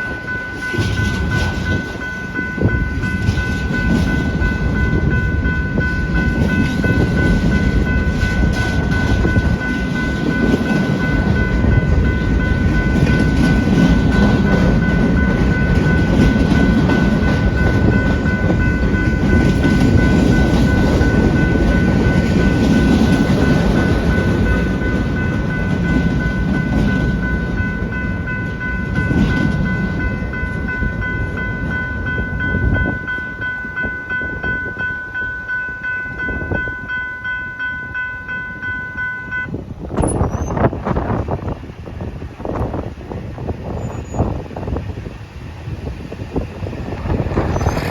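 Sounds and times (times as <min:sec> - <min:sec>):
wheels clacking over rail joints: 0:00.0 - 0:36.0
steady high tones: 0:00.0 - 0:40.8
freight train rumbling past: 0:00.0 - 0:47.9
wind noise: 0:00.0 - 0:47.9.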